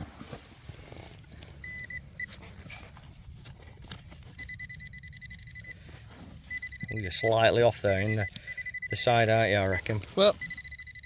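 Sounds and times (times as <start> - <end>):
metal detector probe beeping: 1.5 - 2.5, 4.2 - 11.0.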